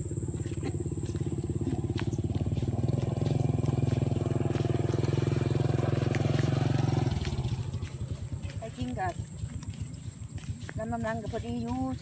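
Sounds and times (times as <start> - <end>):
small motorcycle engine running: 0.0 - 12.0.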